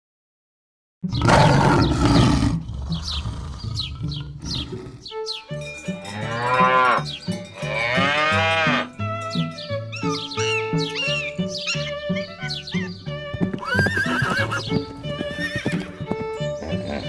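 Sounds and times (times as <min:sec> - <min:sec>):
light background music: 0:01.1 - 0:17.0
cow mooing: 0:06.0 - 0:09.0.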